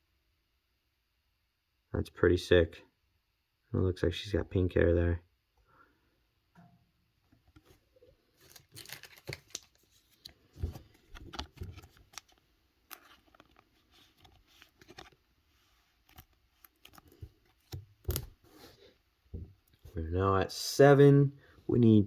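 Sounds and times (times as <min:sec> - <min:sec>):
cards clicking and snapping: 0:08.4 - 0:09.8
foil wrappers crinkling: 0:08.4 - 0:10.3.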